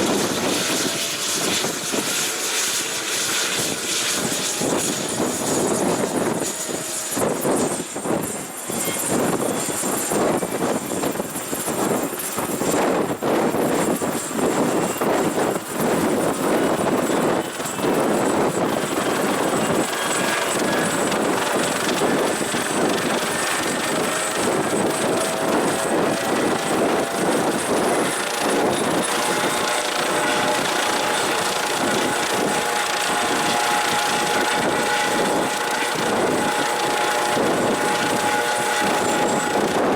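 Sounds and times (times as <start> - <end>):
helicopter running: 0.0 - 39.9
steady tones: 18.6 - 39.9.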